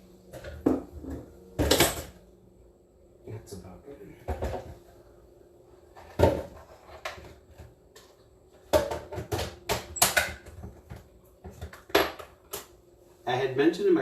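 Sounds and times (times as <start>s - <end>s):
kitchenware clunks and knocks: 0.3s - 2.2s, 4.2s - 4.9s, 6.0s - 7.7s, 8.6s - 12.4s.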